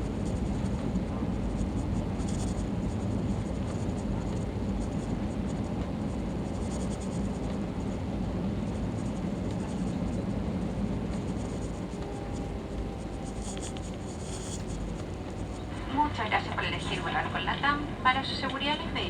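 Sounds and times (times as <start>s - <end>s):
aircraft cabin rumble: 0.0s - 19.0s.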